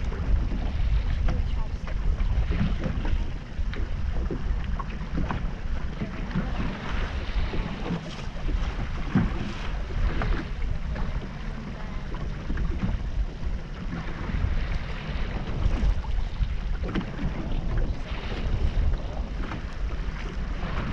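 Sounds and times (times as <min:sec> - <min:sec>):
wind and water rumble: 0:00.0 - 0:20.9.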